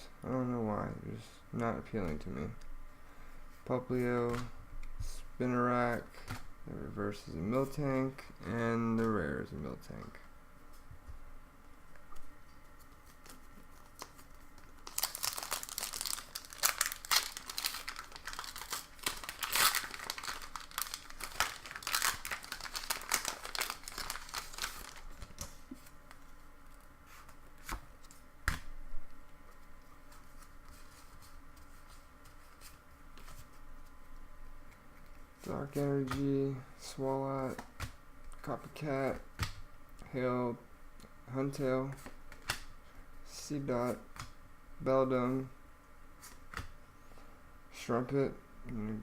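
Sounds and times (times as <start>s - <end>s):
foil wrapper crinkling and tearing: 13.7s - 26.2s.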